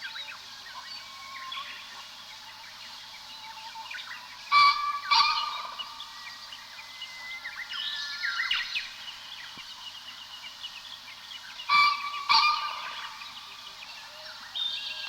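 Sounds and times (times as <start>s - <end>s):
wild birds chirping and trilling: 0.0s - 15.0s
loud bird calls: 3.4s - 6.8s, 10.1s - 15.0s.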